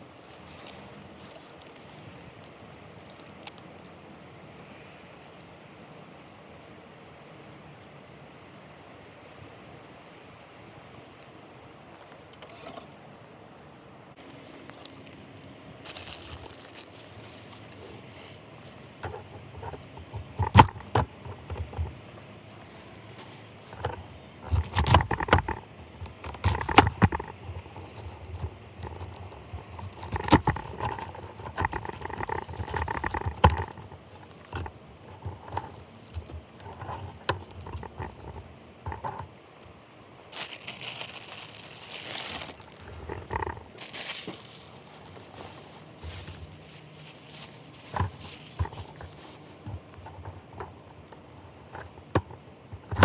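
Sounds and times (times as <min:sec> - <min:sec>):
crinkling: 0:00.0 - 0:13.2, 0:14.2 - 0:53.0
hissing rustle: 0:14.1 - 0:20.4, 0:21.2 - 0:50.2.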